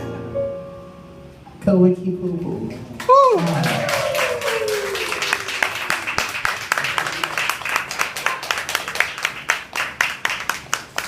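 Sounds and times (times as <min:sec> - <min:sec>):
audience applauding: 0:03.0 - 0:11.0.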